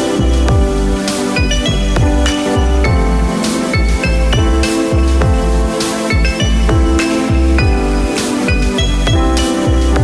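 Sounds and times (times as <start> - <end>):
electronic music: 0.0 - 10.0
deep bass drum dropping in pitch: 1.6 - 8.0.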